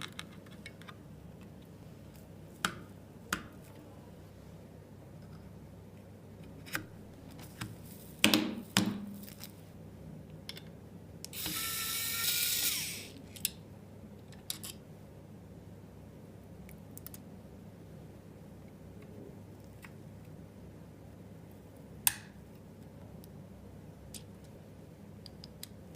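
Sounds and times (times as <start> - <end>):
electric screwdriver whirring: 11.4 - 13.2
clicks of parts handled: 14.3 - 14.8.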